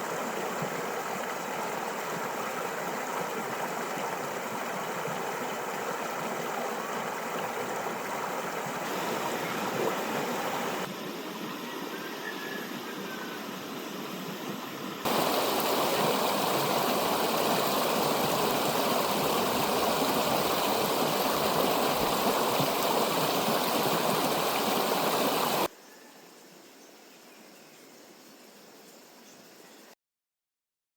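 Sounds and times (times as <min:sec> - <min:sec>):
river rushing: 0:00.0 - 0:10.9, 0:15.0 - 0:25.7
faint steady hiss: 0:00.0 - 0:30.0.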